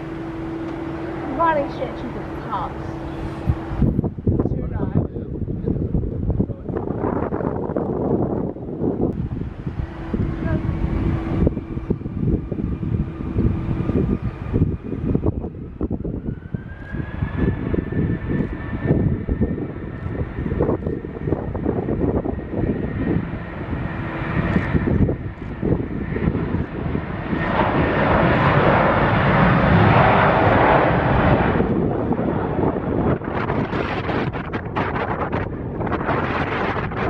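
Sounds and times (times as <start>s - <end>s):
airliner engines whining: 0.0s - 37.0s
wind rumbling on microphone: 0.0s - 37.0s.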